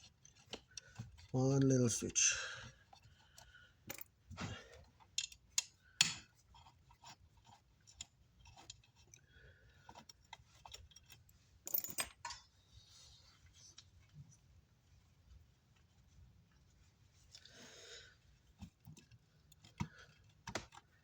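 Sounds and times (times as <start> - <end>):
screwdriver and metal parts clicking: 4.9 - 9.2, 9.9 - 12.4.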